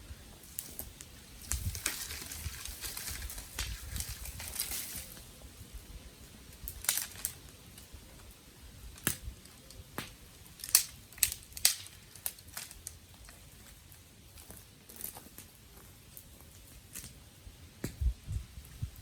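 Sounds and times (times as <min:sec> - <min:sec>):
dry sticks cracking: 0:00.4 - 0:05.3, 0:06.6 - 0:07.9, 0:08.9 - 0:17.2.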